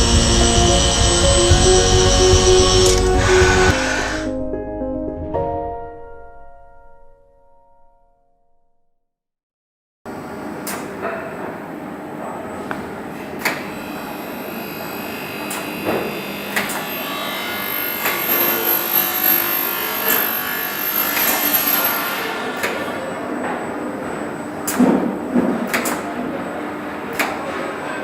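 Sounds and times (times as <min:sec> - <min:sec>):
dispensing machine running: 0:00.0 - 0:04.0, 0:13.8 - 0:23.0.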